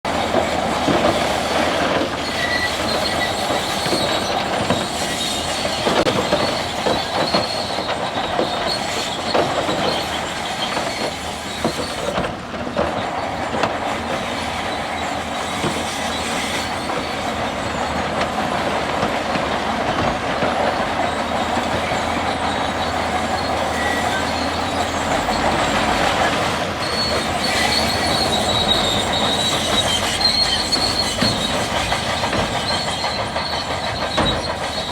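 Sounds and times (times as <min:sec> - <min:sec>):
bulldozer tracks squealing and clanking: 0:00.1 - 0:34.9
high metallic squeal: 0:02.2 - 0:12.2, 0:20.9 - 0:34.9.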